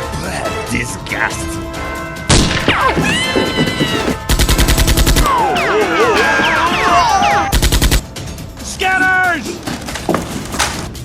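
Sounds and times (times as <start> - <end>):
background music: 0.0 - 11.0
sliding electronic tones: 4.0 - 8.0
rapid automatic gunfire: 4.3 - 8.0.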